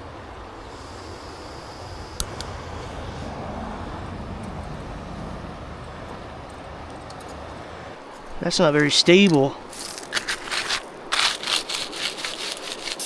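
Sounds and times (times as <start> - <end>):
camp stove burning: 0.0 - 13.0.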